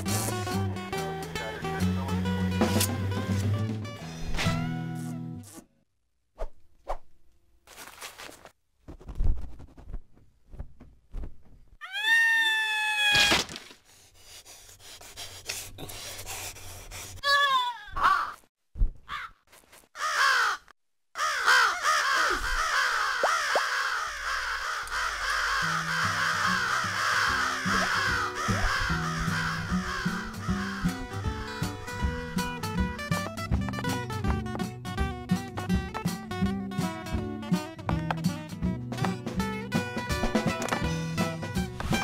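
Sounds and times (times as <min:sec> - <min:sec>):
chorus of chirping calls: 0:21.2 - 0:31.1.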